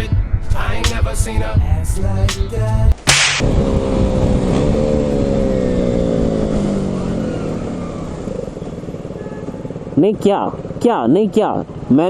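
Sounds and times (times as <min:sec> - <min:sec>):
wind rumble on microphone: 0:00.0 - 0:06.8
motorcycle engine running: 0:03.4 - 0:11.0.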